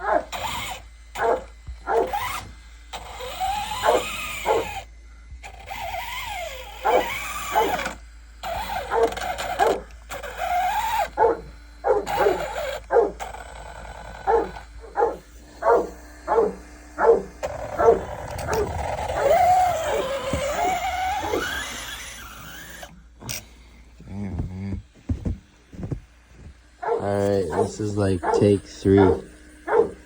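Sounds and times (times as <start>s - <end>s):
dog barking: 0.0s - 2.4s, 3.7s - 4.8s, 6.8s - 7.9s, 8.6s - 9.9s, 10.7s - 13.2s, 14.2s - 21.7s, 26.8s - 30.0s
dog whining: 0.0s - 4.8s, 5.6s - 13.5s, 14.2s - 23.0s, 26.8s - 30.0s.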